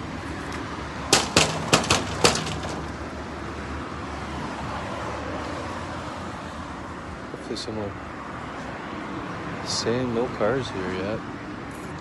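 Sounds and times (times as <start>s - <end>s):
knocking on a door: 1.1s - 2.9s.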